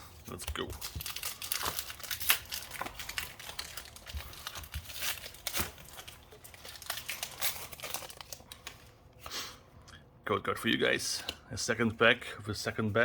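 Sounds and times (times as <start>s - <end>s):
foil wrapper crinkling: 0.3s - 8.9s.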